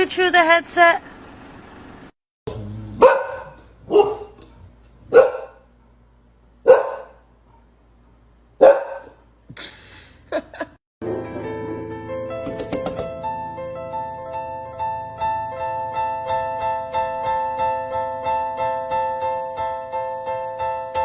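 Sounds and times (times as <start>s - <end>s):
dog barking: 3.0s - 4.4s, 5.1s - 5.7s, 6.6s - 7.2s, 8.6s - 9.2s.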